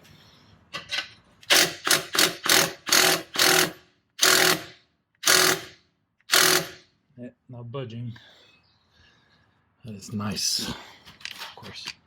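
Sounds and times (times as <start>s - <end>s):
impact wrench hammering: 1.4s - 6.9s.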